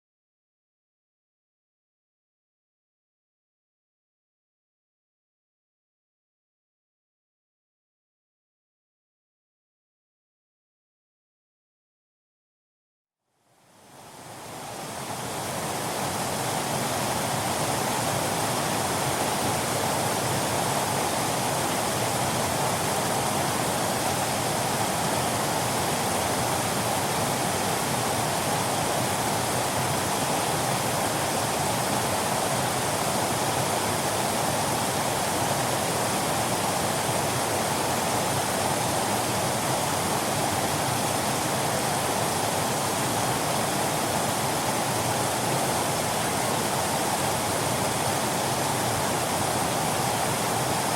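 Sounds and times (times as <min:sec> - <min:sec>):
waterfall rushing: 0:13.7 - 0:50.9.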